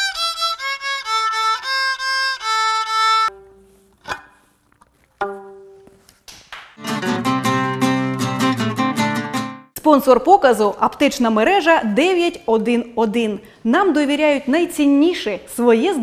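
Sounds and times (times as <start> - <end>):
solo violin playing: 0.0 - 3.8
strummed guitar music: 6.8 - 9.7.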